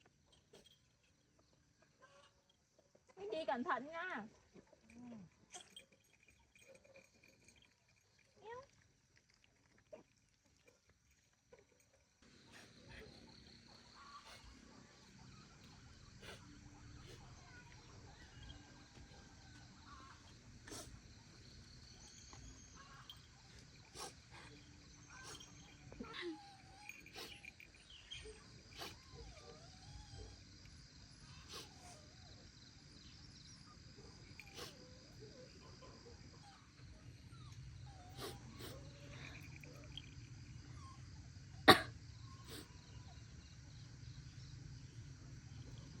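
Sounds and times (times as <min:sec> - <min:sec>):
faint animal calls: 0:19.4 - 0:21.0.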